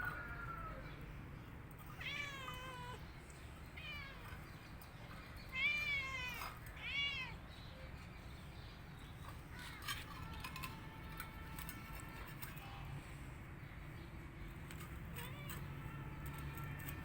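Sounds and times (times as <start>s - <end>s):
cat meowing: 1.9s - 3.0s, 3.8s - 4.4s, 5.5s - 7.4s.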